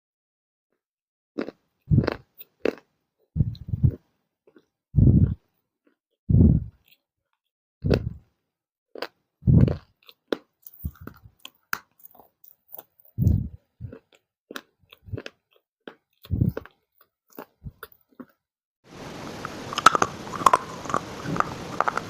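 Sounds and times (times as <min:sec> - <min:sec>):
crunching bites of baked clay: 0:01.4 - 0:06.0, 0:08.9 - 0:18.4, 0:19.7 - 0:22.0.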